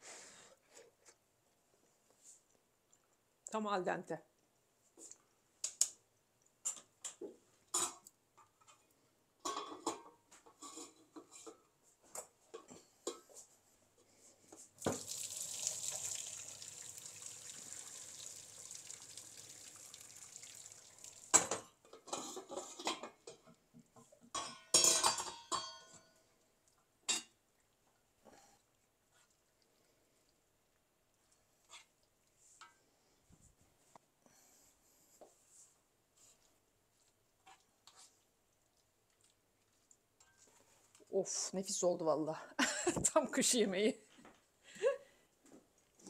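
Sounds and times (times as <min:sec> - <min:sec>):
pots and utensils clattering: 0:06.7 - 0:08.8, 0:09.4 - 0:13.5, 0:21.4 - 0:26.1
water pouring into sink: 0:14.8 - 0:21.6.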